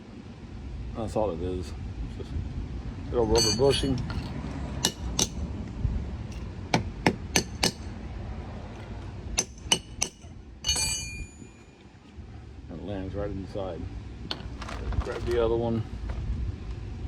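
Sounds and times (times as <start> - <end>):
ringing metal clatter: 3.2 - 5.4, 7.3 - 8.0, 8.8 - 11.8
hammer tapping metal: 3.3 - 5.4, 6.3 - 8.0, 8.8 - 11.7.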